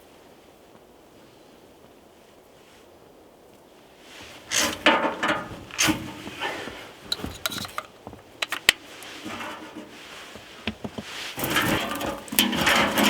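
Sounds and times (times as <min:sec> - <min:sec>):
rubbing and scraping: 0:04.1 - 0:13.0.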